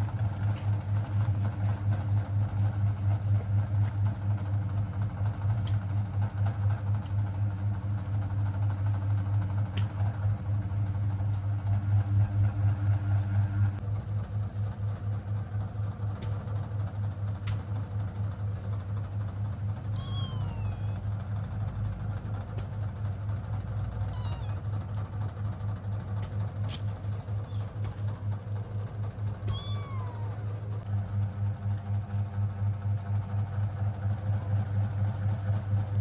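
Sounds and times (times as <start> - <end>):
low pulsing hum: 9.8 - 33.3
cat meowing: 19.9 - 21.1, 24.1 - 24.8, 29.4 - 30.6.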